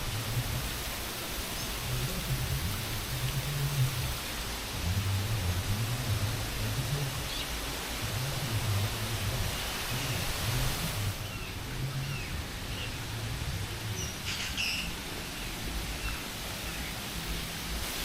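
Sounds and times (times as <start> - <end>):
birds chirping and whistling: 11.1 - 13.0, 13.9 - 17.5.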